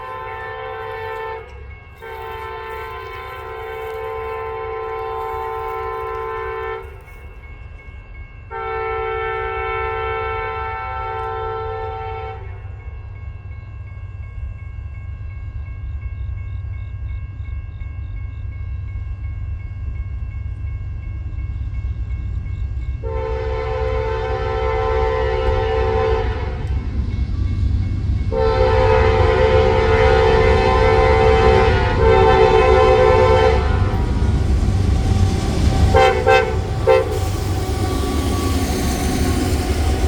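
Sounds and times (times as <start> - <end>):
locomotive air horn blasts: 0.0 - 7.0, 8.5 - 12.6, 23.0 - 26.6, 28.3 - 34.5, 35.9 - 38.4
low rumble of locomotives: 0.0 - 40.0.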